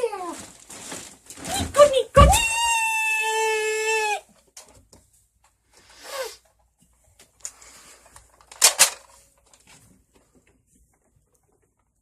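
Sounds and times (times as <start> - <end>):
person yelling high-pitched: 1.5 - 4.3.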